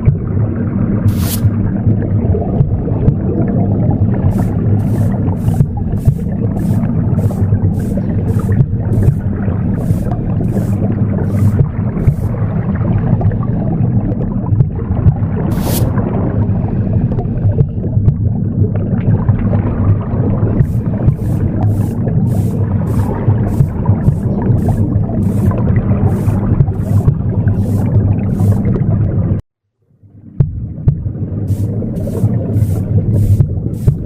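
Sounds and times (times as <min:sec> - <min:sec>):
low whooshing womb sound: 0:00.0 - 0:29.4, 0:30.2 - 0:34.0
broom sweeping: 0:01.1 - 0:01.6, 0:04.3 - 0:12.4, 0:15.5 - 0:16.0, 0:20.6 - 0:28.8, 0:31.5 - 0:34.0.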